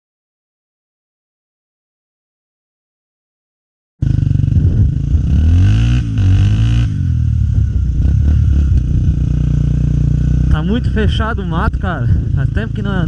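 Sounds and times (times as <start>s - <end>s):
motorcycle engine revving: 4.0s - 13.0s.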